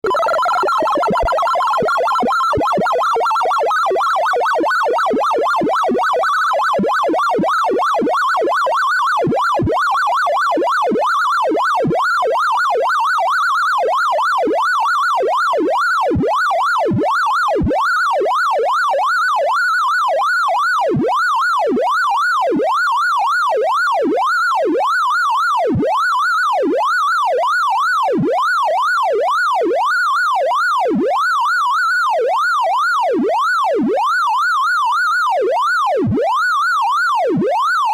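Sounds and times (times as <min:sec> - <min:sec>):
electronic tone sweeping up and down: 0:00.0 - 0:03.0.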